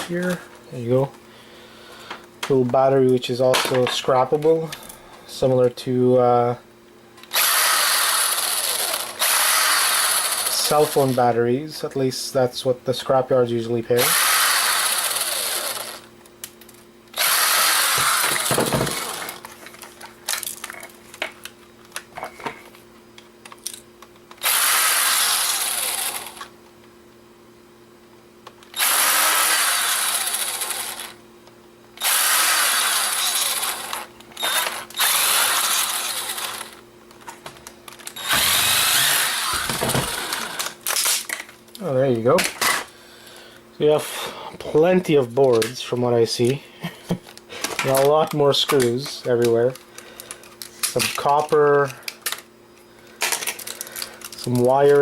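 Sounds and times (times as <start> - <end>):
power screwdriver running: 7.3 - 11.2, 14.0 - 16.1, 17.1 - 19.5, 24.4 - 26.5, 28.7 - 31.2, 32.0 - 36.8, 38.1 - 41.1.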